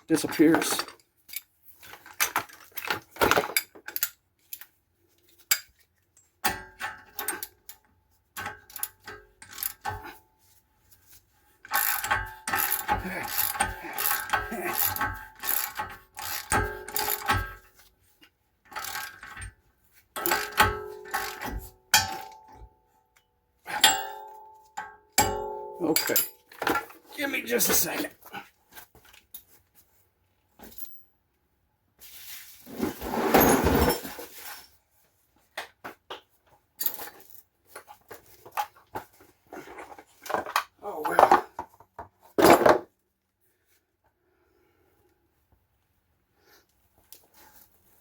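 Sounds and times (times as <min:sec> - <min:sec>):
metal tools clinking: 0:00.2 - 0:04.8, 0:11.7 - 0:17.7, 0:20.2 - 0:22.6, 0:23.7 - 0:28.0, 0:33.2 - 0:34.8.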